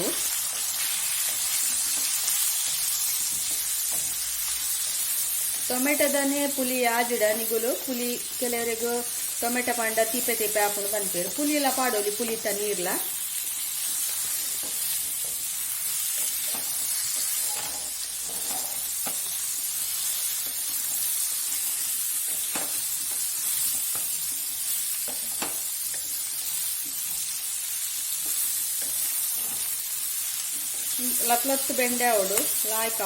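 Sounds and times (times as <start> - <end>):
okra sizzling in oil: 0.0 - 33.0
spoon scraping a pan: 16.2 - 19.3.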